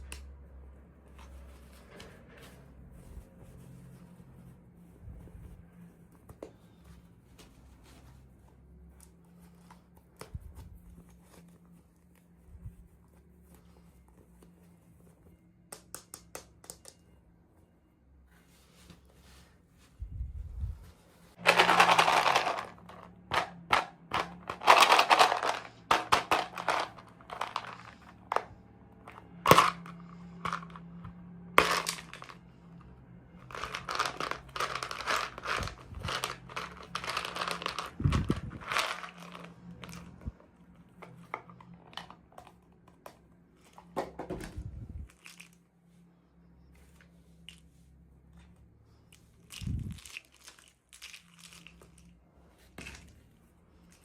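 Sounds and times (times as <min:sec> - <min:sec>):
packaging crinkling: 0:21.4 - 0:23.2, 0:33.4 - 0:40.2.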